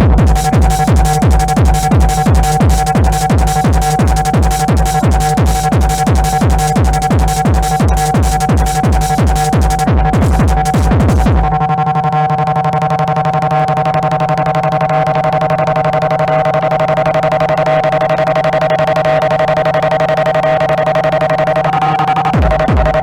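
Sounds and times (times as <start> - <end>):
kick drum: 0.0 - 11.6, 22.4 - 23.0
techno beat: 0.0 - 11.6
pulsing synth chord: 0.8 - 10.8.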